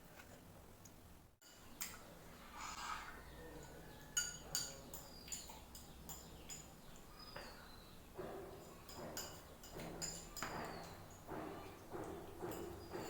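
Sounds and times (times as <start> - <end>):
utensil clinking on dish: 3.6 - 7.6, 8.2 - 13.0.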